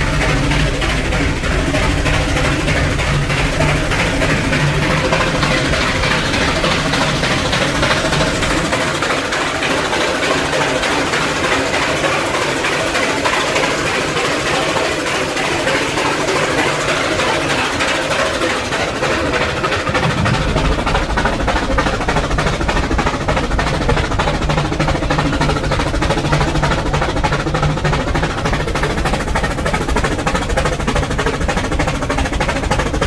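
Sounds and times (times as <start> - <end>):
steam hissing: 0.0 - 33.0
steam locomotive chuffing: 0.0 - 33.0.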